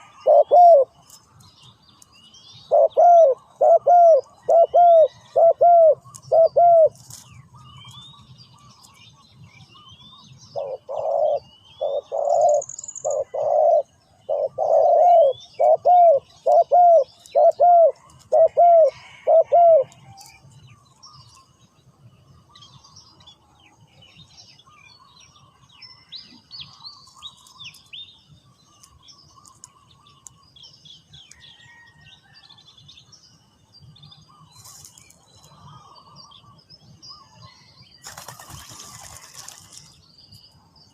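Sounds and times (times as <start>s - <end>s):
dove cooing: 0.0s - 0.9s, 2.7s - 7.0s, 10.6s - 20.2s
small birds chirping: 0.0s - 31.9s.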